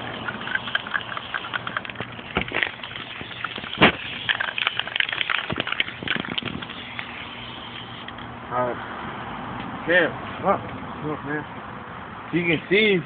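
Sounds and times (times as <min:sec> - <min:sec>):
spray paint can rattling: 0:00.0 - 0:08.3.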